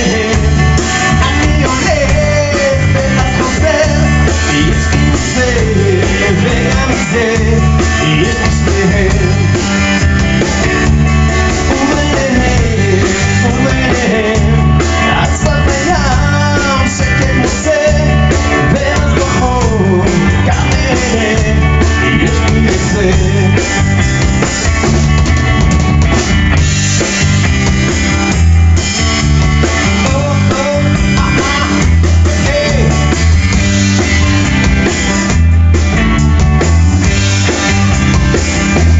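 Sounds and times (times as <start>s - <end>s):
bass guitar: 0.0s - 38.9s
drum kit beat: 0.0s - 38.9s
electric guitar: 0.0s - 38.9s.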